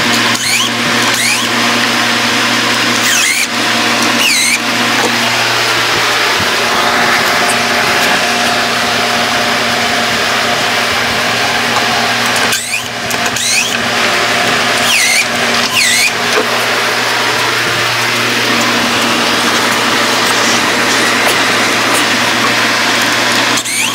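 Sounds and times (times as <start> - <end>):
machine humming: 0.0 - 23.9
high-pitched squeaks: 0.3 - 1.6, 3.0 - 5.2, 12.4 - 13.8, 14.8 - 16.2, 23.6 - 23.9.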